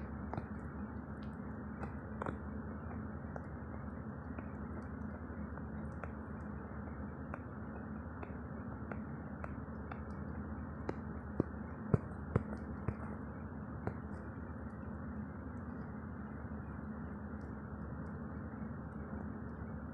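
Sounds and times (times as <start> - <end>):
small clicks and taps: 0.0 - 3.6, 4.2 - 14.9.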